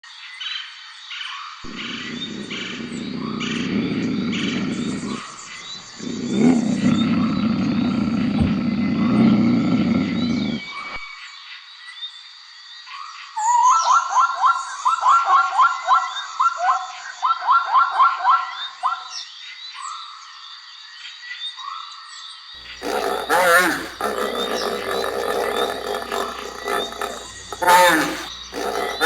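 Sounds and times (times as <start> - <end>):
big cat roaring: 22.6 - 29.0
birds chirping: 22.6 - 29.0.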